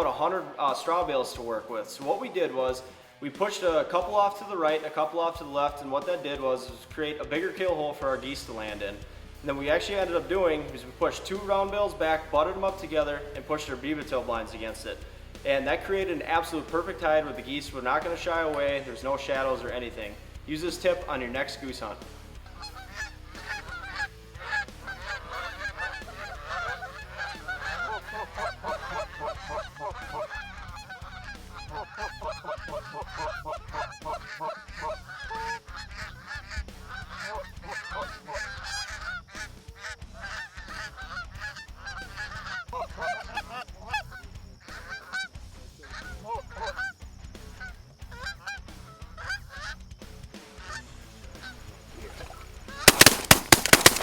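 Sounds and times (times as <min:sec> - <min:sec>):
geese honking: 0:22.4 - 0:45.3, 0:45.9 - 0:49.8, 0:50.6 - 0:50.8, 0:52.3 - 0:54.0.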